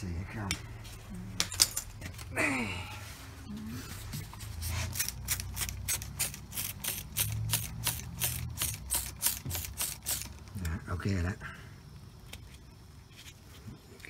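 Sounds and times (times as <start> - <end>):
steady low hum: 0.0 - 14.0
spray bottle squirting: 4.9 - 10.4.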